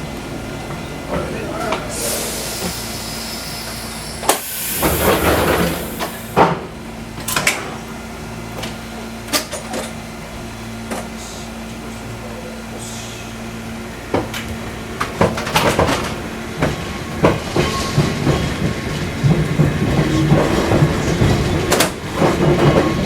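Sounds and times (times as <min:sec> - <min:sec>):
rush of air: 0:02.0 - 0:06.4.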